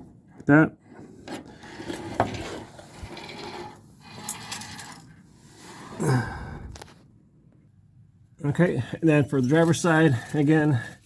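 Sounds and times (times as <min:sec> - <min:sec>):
metal parts clinking and rattling: 0:02.2 - 0:05.1.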